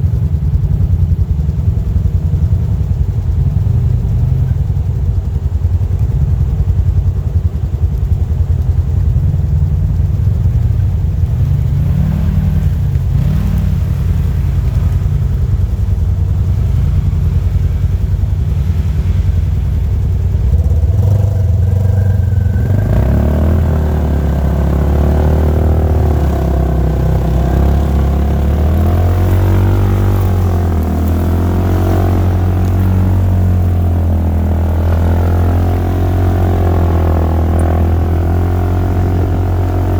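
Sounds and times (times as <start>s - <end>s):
off-road vehicle engine revving: 7.6s - 39.9s.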